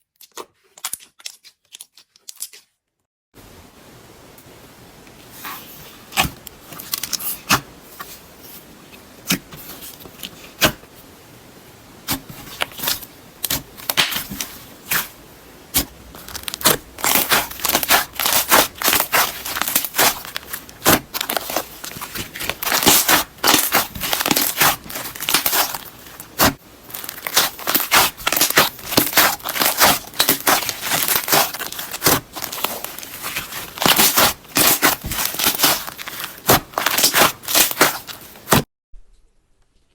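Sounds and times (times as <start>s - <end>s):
slime crackling and popping: 12.1s - 38.6s.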